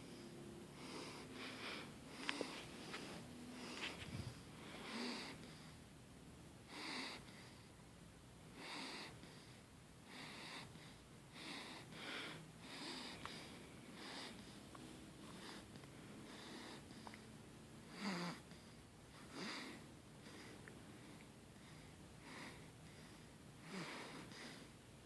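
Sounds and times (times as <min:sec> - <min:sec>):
soft snoring: 0:00.0 - 0:05.8, 0:17.9 - 0:24.7.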